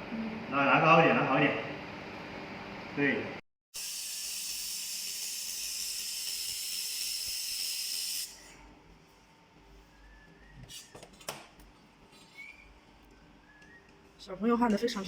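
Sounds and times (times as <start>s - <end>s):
laser welder high hiss: 3.8s - 8.6s.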